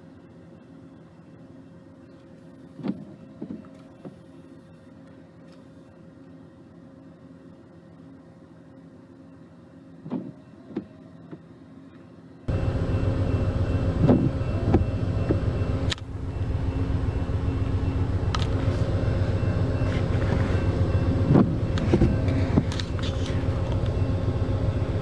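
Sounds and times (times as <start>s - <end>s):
car engine idling: 12.5s - 25.0s.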